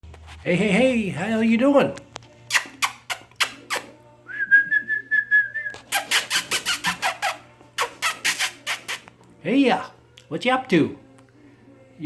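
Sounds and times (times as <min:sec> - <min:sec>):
sharp mouth clicks: 0:02.5 - 0:03.9, 0:05.9 - 0:09.1.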